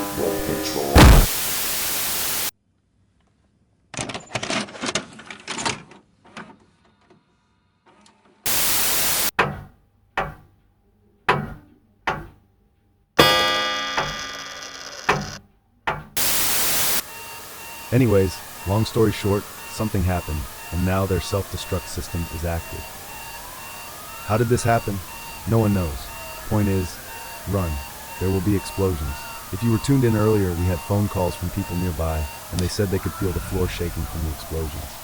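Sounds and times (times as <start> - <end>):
bursts of static: 0.0 - 2.5, 8.5 - 9.3, 16.2 - 35.0
sharp bangs: 0.9 - 1.4, 13.2 - 34.8
crackling bangs: 0.9 - 2.5, 16.2 - 35.0
crash with ringing tail: 13.2 - 14.7.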